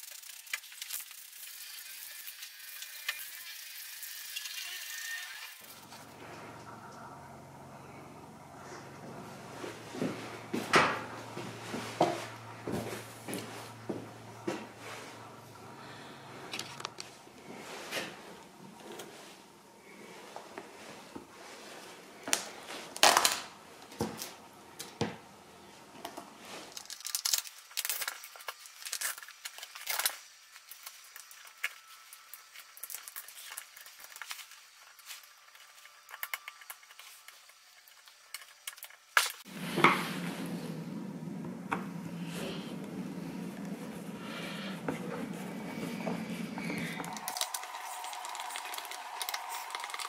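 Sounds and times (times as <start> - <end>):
steady noise: 5.6 - 26.5, 39.5 - 50.0.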